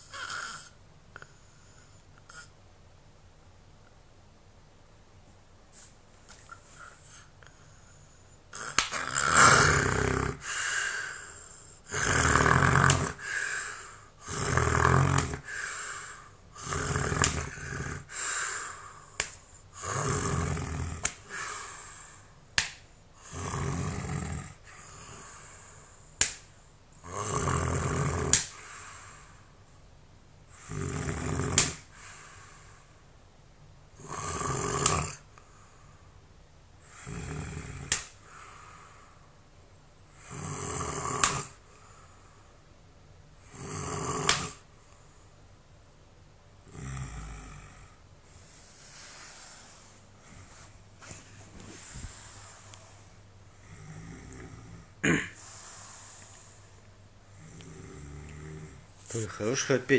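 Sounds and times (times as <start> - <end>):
person snoring heavily: 0.0 - 2.5, 8.5 - 22.3, 23.2 - 26.0, 27.0 - 29.4, 30.5 - 32.8, 34.0 - 35.3, 36.8 - 39.1, 40.2 - 42.0, 43.4 - 44.7, 46.7 - 50.7, 51.6 - 56.7, 57.4 - 59.8.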